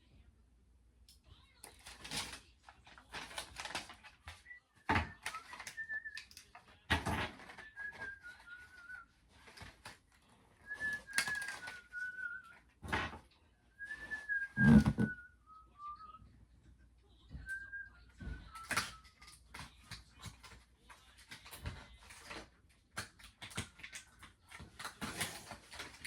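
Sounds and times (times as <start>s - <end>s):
person whistling a slow tune: 4.5s - 6.4s, 7.6s - 9.0s, 10.7s - 12.5s, 13.8s - 16.2s.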